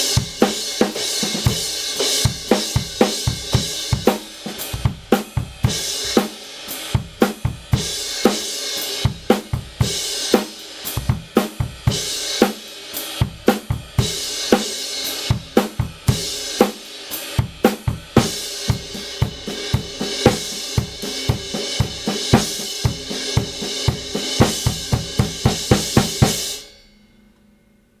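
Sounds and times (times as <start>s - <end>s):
drum kit groove: 0.0s - 26.7s
crash cymbal ringing: 18.4s - 28.0s.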